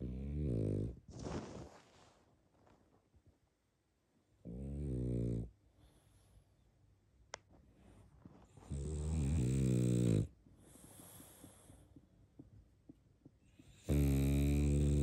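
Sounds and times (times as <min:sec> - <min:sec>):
dog snoring: 0:00.0 - 0:01.0, 0:04.4 - 0:05.6, 0:08.6 - 0:11.7, 0:13.5 - 0:15.0
soft airy breath: 0:10.5 - 0:12.1.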